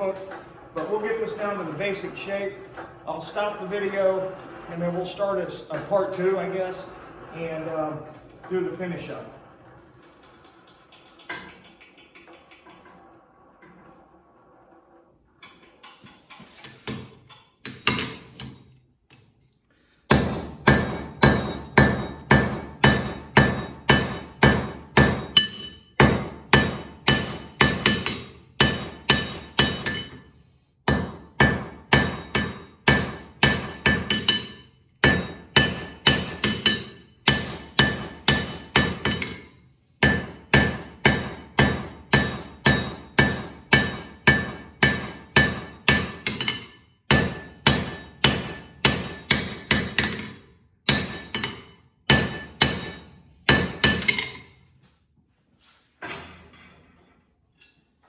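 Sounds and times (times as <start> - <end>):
hammer striking steel on anvil: 16.8 - 19.3, 20.1 - 30.3, 30.9 - 54.6.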